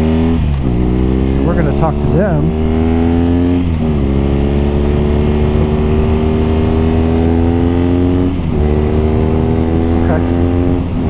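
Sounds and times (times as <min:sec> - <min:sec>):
motorcycle engine accelerating: 0:00.0 - 0:11.0.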